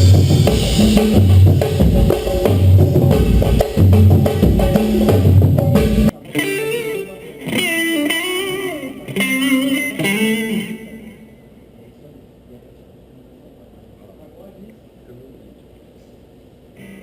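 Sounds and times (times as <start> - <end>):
drum kit playing: 0.0 - 10.8
electric guitar lead phrases: 0.0 - 11.7
faint background noise: 0.0 - 17.0.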